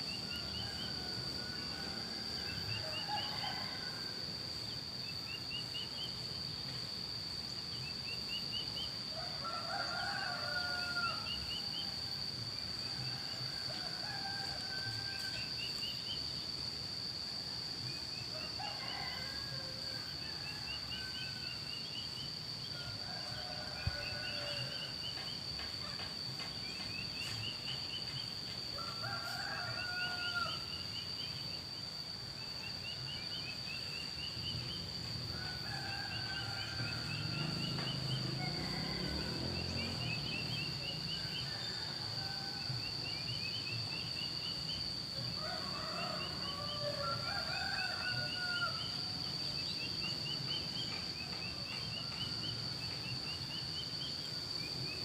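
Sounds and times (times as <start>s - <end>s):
roosters crowing: 0.0s - 4.4s, 9.0s - 15.6s, 18.3s - 21.9s, 22.6s - 30.9s, 34.1s - 54.8s.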